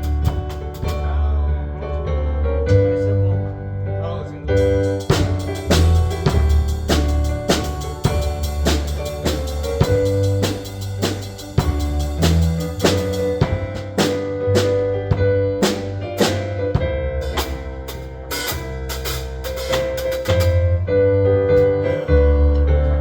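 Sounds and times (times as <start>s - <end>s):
drum kit beat: 0.0s - 1.4s, 4.5s - 22.3s
worship band playing: 4.5s - 20.6s.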